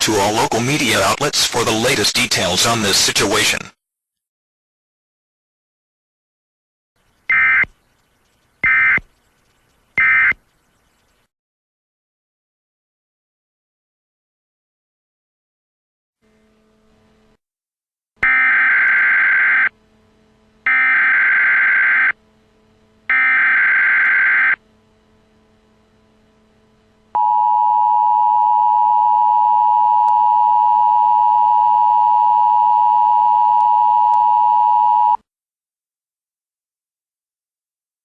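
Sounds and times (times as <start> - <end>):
digital data tones: 10.0 - 10.4.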